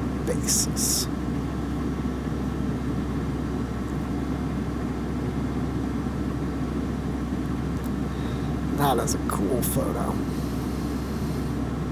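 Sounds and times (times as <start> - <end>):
deep constant hum: 0.0 - 11.9
low mechanical rumble: 0.0 - 11.9.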